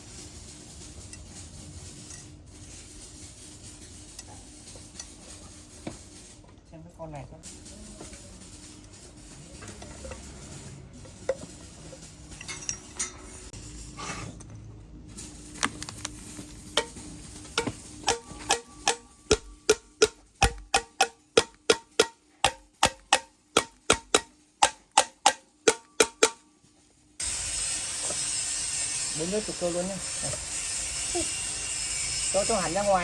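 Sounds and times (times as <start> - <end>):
ringing strikes on metal: 17.6 - 26.4.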